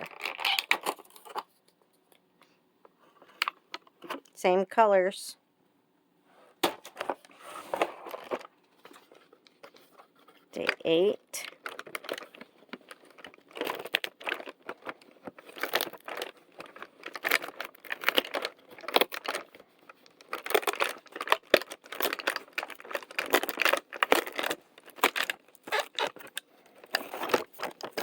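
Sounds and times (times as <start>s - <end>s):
plastic toy clicking and rattling: 0.0s - 1.4s, 9.4s - 28.0s
plastic packaging crinkling: 0.0s - 1.6s, 6.8s - 28.0s.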